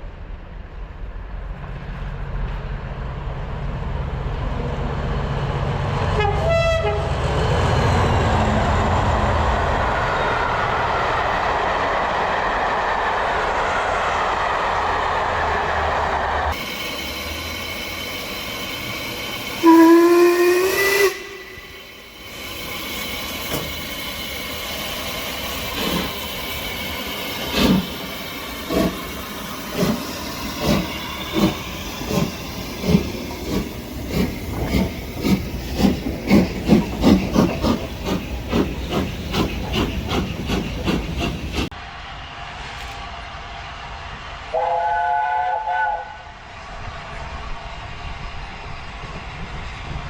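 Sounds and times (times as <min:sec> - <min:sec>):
steam locomotive whistle: 0:06.1 - 0:07.2, 0:19.4 - 0:22.8, 0:44.5 - 0:46.4
hissing steam: 0:10.2 - 0:41.7
locomotive exhaust chuffs: 0:16.6 - 0:41.7.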